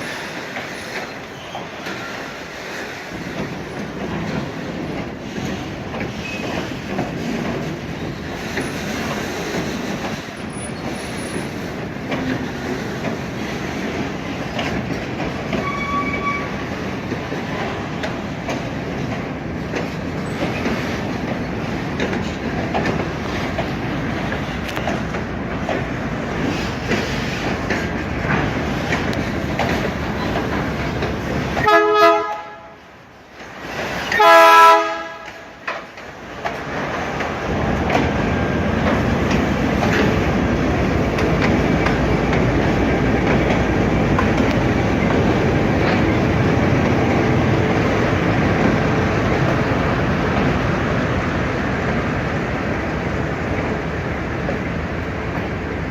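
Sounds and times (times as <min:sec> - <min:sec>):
train rolling along track: 0:00.0 - 0:55.9
train horn blasts: 0:31.6 - 0:32.8, 0:34.1 - 0:35.4.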